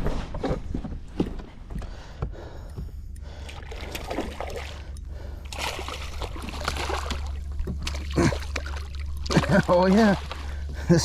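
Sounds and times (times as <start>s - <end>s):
steady low hum: 0.0s - 11.0s
water splashing and sloshing: 0.0s - 11.0s.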